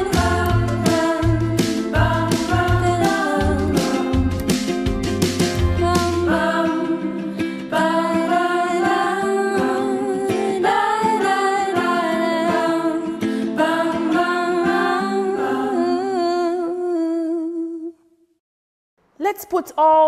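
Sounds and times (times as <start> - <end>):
instrumental backing music: 0.0 - 9.2.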